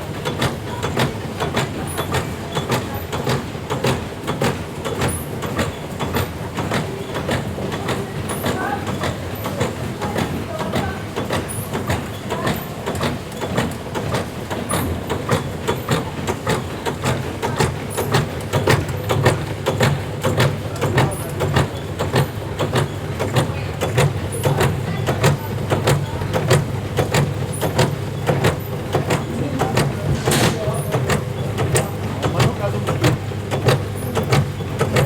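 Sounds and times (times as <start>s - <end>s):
low machine hum: 14.4s - 35.0s
packaging machine clacking: 14.8s - 35.0s.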